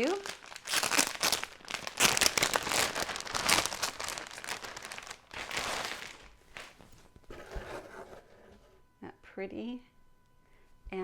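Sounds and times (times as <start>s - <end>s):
plastic bag crinkling: 0.0s - 7.8s.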